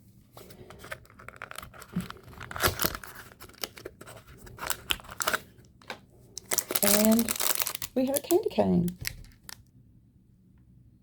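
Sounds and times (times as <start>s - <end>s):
packaging tearing and crinkling: 0.6s - 9.6s.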